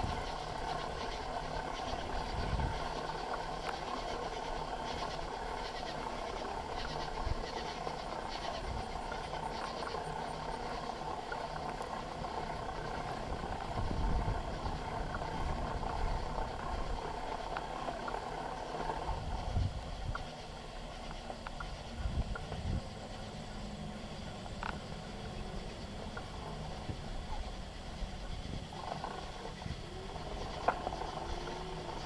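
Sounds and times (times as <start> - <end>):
bicycle tyre and drivetrain rumble: 0.0 - 32.0
insects chirping: 0.0 - 32.0.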